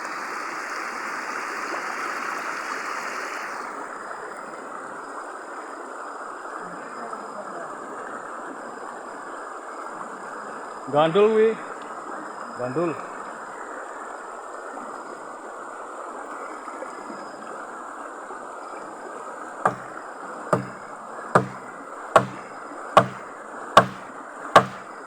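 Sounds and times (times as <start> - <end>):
sharp knocks: 19.7 - 19.9, 20.6 - 20.8, 21.4 - 25.0.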